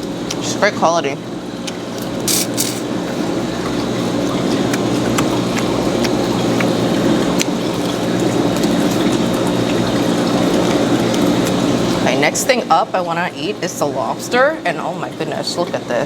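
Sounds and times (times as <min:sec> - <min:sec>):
wet crunching of chewing: 0:03.7 - 0:12.0.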